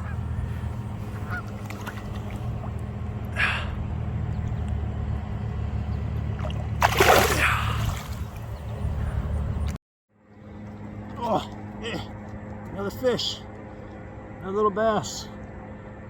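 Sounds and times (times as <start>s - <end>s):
steady low hum: 0.0s - 16.0s
splash in pond water: 1.4s - 2.7s, 6.3s - 8.5s.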